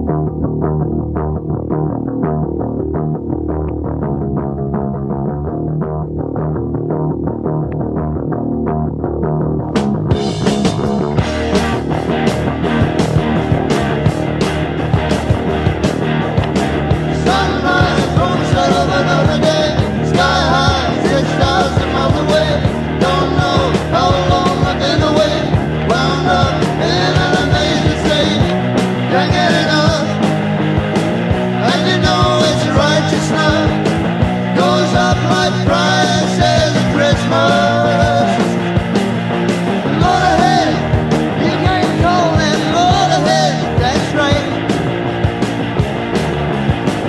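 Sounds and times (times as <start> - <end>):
rock music with singing: 9.4 - 47.0.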